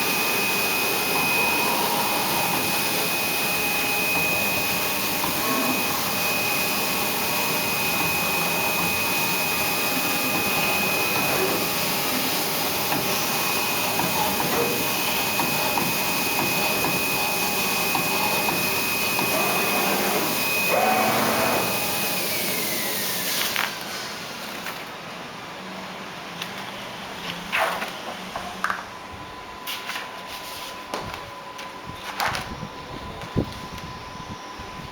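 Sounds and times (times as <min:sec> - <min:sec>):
vacuum blower rushing: 0:00.0 - 0:24.9
high machine whine: 0:00.0 - 0:26.1, 0:30.8 - 0:34.9.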